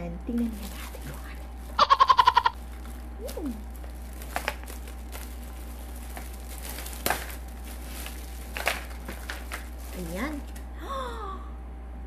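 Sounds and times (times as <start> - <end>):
plastic packaging crinkling: 0.3 - 10.7.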